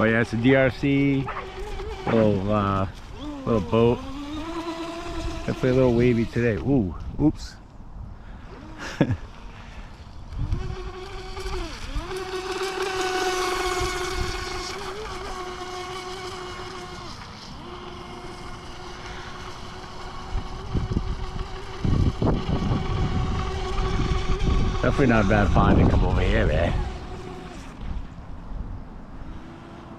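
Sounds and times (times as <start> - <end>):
wind buffeting microphone: 0.0 - 8.4, 10.2 - 12.4, 13.1 - 15.2, 18.4 - 29.6
rc boat motor whining: 0.0 - 29.9.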